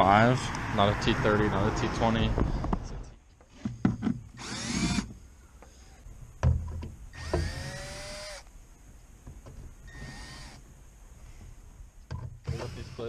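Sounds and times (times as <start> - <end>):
cordless drill motor spinning: 4.3 - 5.1, 7.1 - 8.5, 9.9 - 10.6.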